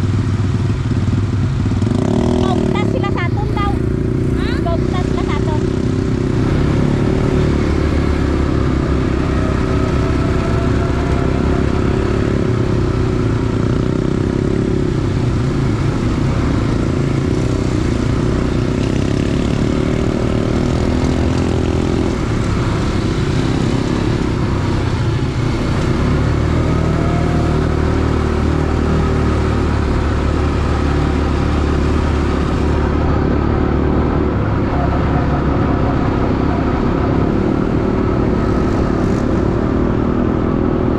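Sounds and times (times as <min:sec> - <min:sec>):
atv engine running: 0:00.0 - 0:40.9.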